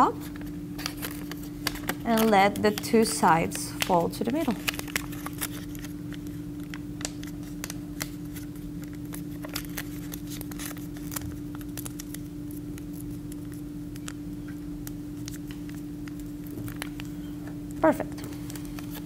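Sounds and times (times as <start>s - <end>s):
steady low hum: 0.0s - 19.0s
paper crackling and rustling: 0.2s - 14.2s, 14.8s - 17.2s, 18.2s - 19.0s.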